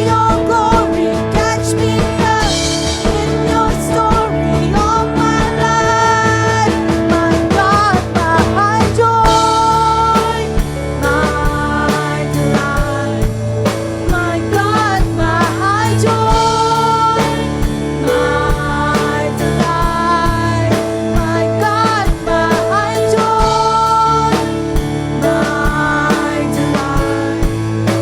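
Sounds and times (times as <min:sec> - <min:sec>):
worship band music: 0:00.0 - 0:28.0.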